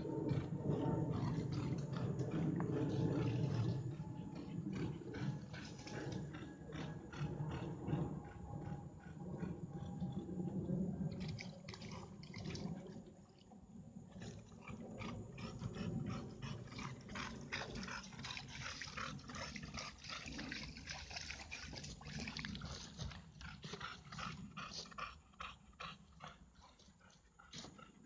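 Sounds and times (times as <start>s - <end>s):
dog sounds: 14.2s - 28.0s.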